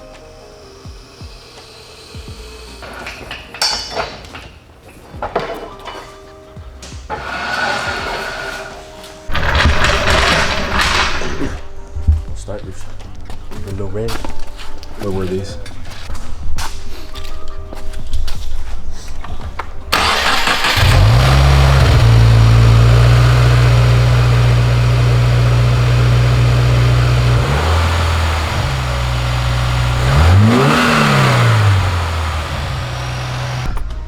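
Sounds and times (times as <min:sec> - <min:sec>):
engine revving: 0:19.9 - 0:33.7
car engine starting and idling: 0:19.9 - 0:33.8.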